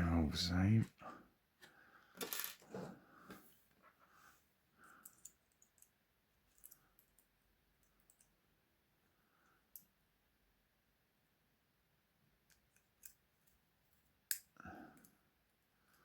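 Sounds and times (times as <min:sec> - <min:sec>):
metallic clicks of lock picks: 0:12.5 - 0:13.6.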